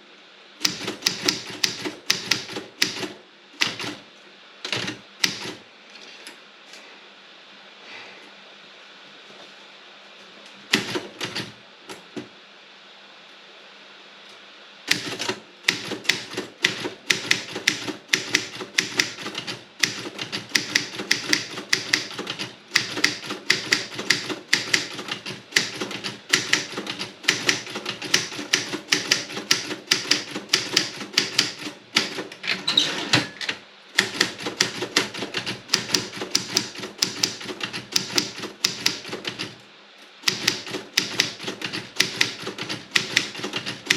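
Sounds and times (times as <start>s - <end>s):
typewriter keys clicking: 0.6s - 4.0s, 14.9s - 32.4s, 34.0s - 39.6s, 40.2s - 43.9s.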